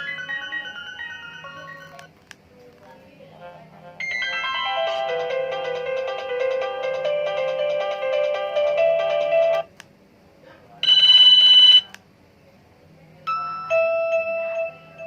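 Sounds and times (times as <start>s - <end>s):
melodic phone ringtone: 0.0s - 2.1s, 4.0s - 9.7s, 13.3s - 15.0s.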